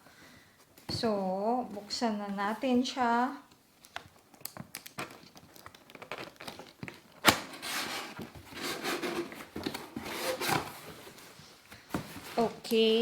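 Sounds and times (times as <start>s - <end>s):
packaging rustling: 3.8s - 13.0s.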